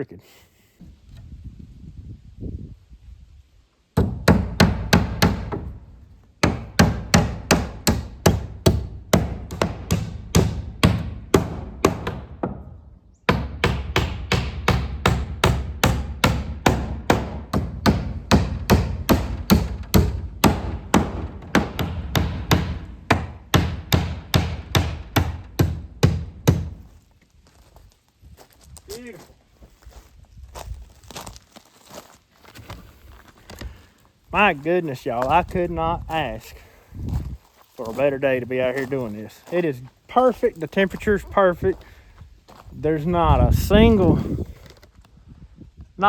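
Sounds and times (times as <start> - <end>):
hammer driving nails into wood: 4.0 - 5.8, 6.4 - 26.9.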